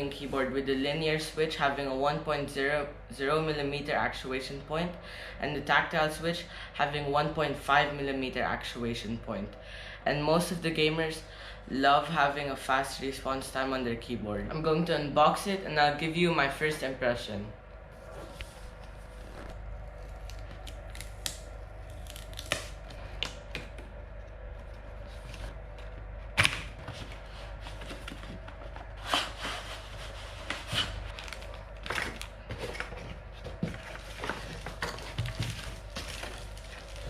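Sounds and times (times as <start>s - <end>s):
cardboard packaging rustling: 24.6s - 37.0s.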